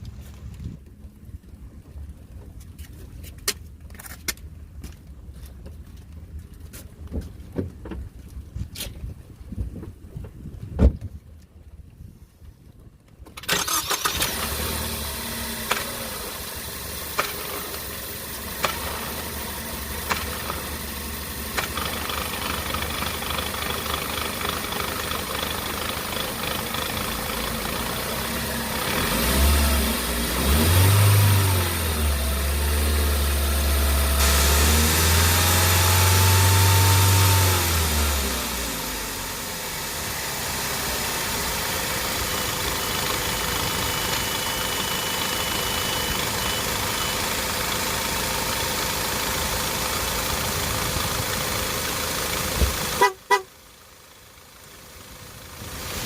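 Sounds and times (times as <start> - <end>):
sharp thump from transmission: 9.8 - 11.1, 17.1 - 17.8, 20.0 - 20.6, 52.4 - 53.1
car engine starting and idling: 11.2 - 56.0
engine revving: 13.5 - 47.0.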